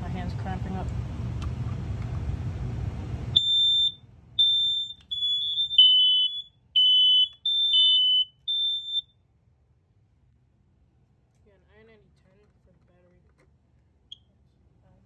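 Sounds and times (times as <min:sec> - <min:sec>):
smoke alarms beeping: 0:03.3 - 0:09.2.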